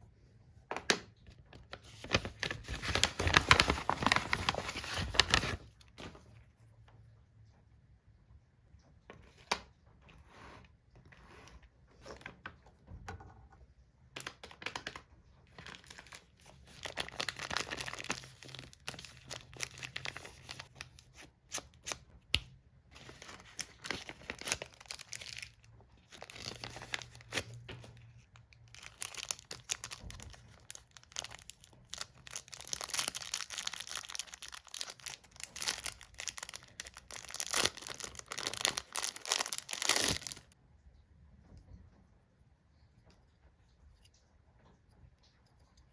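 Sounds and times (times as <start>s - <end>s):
packaging tearing and crinkling: 2.0s - 5.6s, 15.7s - 21.0s, 23.0s - 27.6s, 28.7s - 40.6s.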